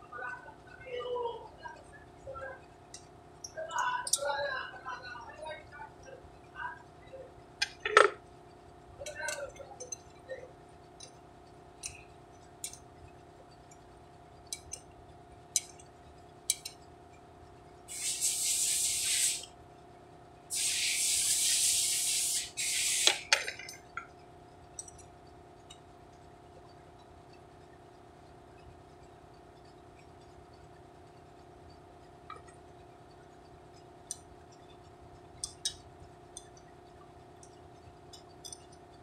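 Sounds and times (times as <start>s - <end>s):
faint steady hum: 0.0s - 39.0s
metallic clicks of tools: 2.9s - 4.3s, 7.6s - 8.2s, 9.0s - 10.2s, 11.8s - 12.9s, 14.5s - 14.9s, 15.6s - 15.9s, 16.5s - 16.9s, 23.0s - 26.2s, 35.4s - 36.7s, 37.4s - 39.0s
spray hissing: 17.9s - 19.4s, 20.5s - 23.3s.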